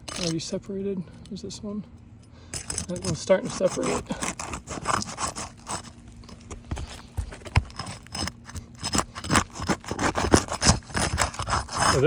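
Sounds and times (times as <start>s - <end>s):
roof shingles scraping and crackling: 2.6s - 12.0s.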